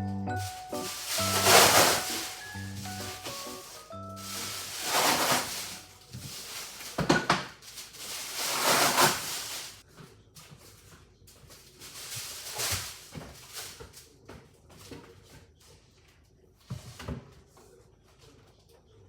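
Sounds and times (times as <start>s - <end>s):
wooden parts scraping: 0.4s - 9.8s.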